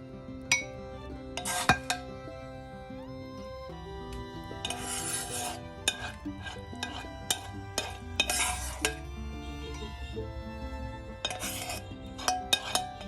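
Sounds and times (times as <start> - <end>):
background music: 0.0 - 13.0
spoon scraping a dish: 1.4 - 2.0, 4.6 - 9.0, 11.2 - 13.0.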